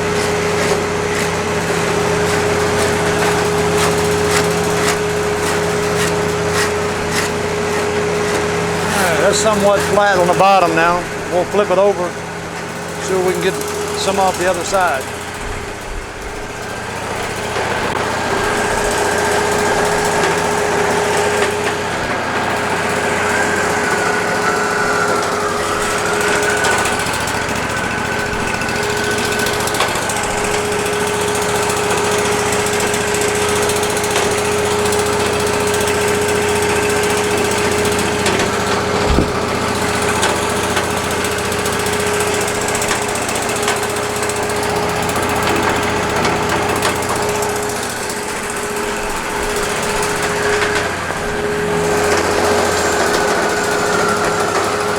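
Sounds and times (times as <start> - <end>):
hydraulic whine: 0.0 - 54.9
sawmill engine humming: 0.0 - 54.9
single knock: 39.0 - 39.5.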